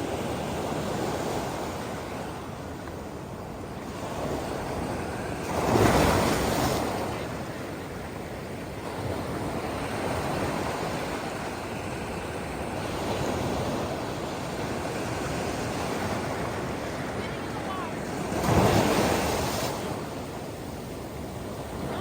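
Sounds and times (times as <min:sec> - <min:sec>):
steady wash of water: 0:08.7 - 0:22.0
wave breaking: 0:15.9 - 0:20.2.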